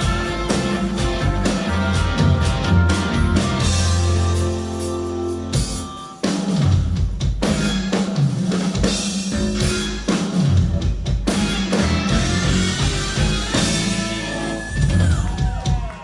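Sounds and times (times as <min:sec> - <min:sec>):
drum kit hits: 0:00.0 - 0:15.9
rock band playing live: 0:00.0 - 0:16.0.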